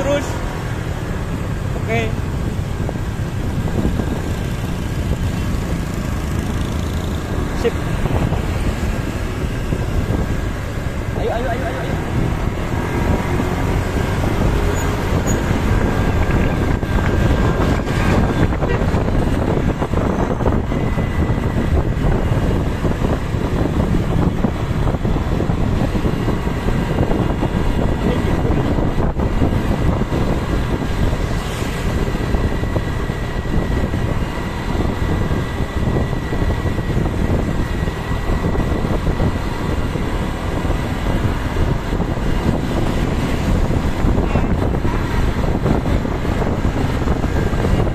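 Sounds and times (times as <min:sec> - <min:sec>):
vehicle engine and tyre rumble: 0:00.0 - 0:47.9.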